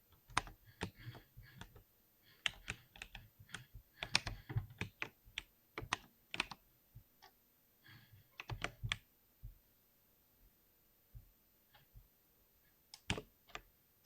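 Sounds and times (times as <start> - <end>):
typing on computer keyboard: 0.2 - 1.8, 2.4 - 6.6, 8.4 - 9.0, 13.0 - 13.7.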